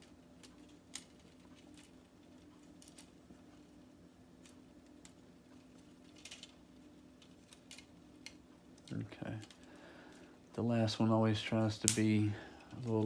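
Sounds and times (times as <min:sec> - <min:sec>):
low steady hum: 0:00.0 - 0:13.0
plastic pieces clicking together: 0:05.8 - 0:06.6, 0:07.2 - 0:09.7.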